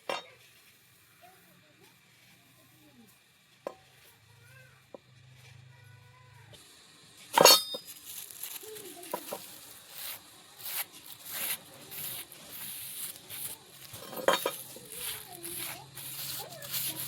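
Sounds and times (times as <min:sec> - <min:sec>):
metal scraping strokes: 0:07.3 - 0:17.0
metal clinking on metal: 0:07.4 - 0:08.0, 0:13.8 - 0:15.4.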